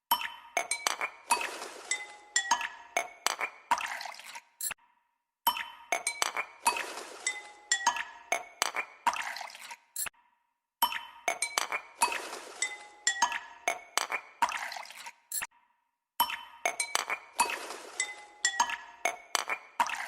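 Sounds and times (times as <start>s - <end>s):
glassy chime music: 16.2s - 19.1s.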